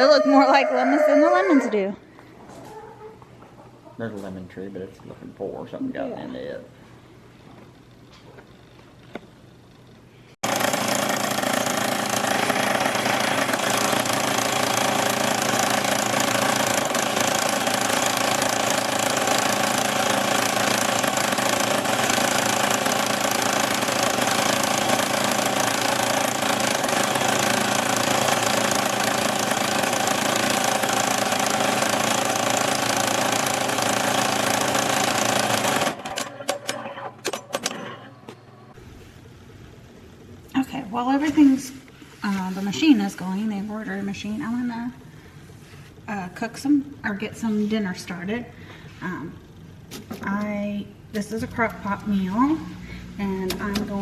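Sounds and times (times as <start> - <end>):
embroidery machine needle rattle: 10.4 - 37.9.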